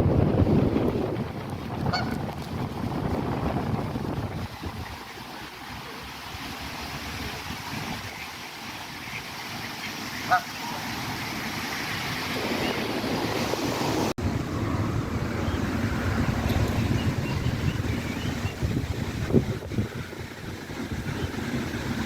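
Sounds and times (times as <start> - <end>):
wind buffeting microphone: 0.0 - 8.2, 10.8 - 22.0
bird call: 9.0 - 11.1
outdoor rumble: 12.2 - 22.0.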